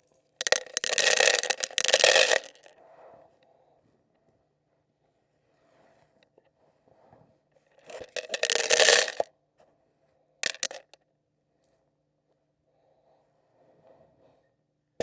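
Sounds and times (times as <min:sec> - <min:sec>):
corn kernels pattering: 0:00.4 - 0:02.6, 0:07.9 - 0:09.2, 0:10.4 - 0:10.8.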